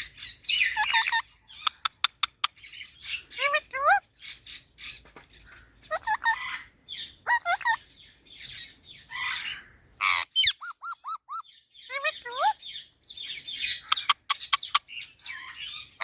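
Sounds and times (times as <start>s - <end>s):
parrot squawking: 0.0s - 4.4s, 5.8s - 7.8s, 9.1s - 12.6s, 13.6s - 16.0s.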